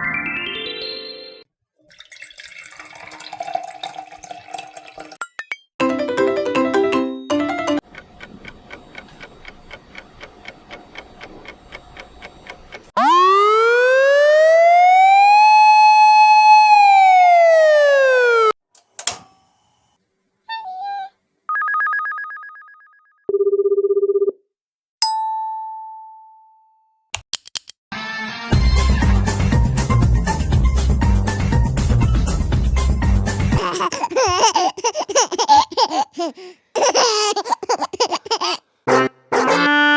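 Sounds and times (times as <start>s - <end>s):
faint ticking: 7.9s - 12.9s
siren-like gliding tone: 13.0s - 18.5s
single ding: 25.0s - 26.8s.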